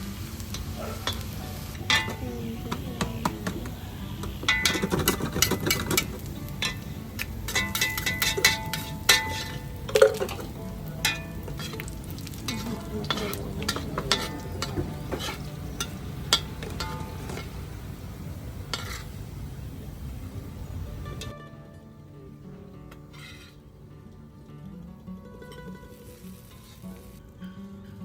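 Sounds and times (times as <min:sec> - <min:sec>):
beef sizzling in a pan: 0:00.0 - 0:21.2, 0:25.4 - 0:28.0
metal utensil scraping a pan: 0:03.4 - 0:17.6, 0:18.7 - 0:19.2, 0:23.0 - 0:23.6.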